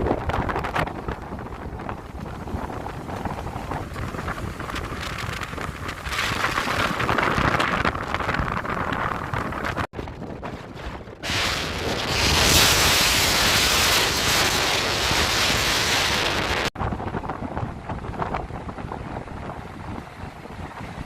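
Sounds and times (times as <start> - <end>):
wind buffeting microphone: 0.0 - 21.0
sea surf rushing: 11.2 - 16.8.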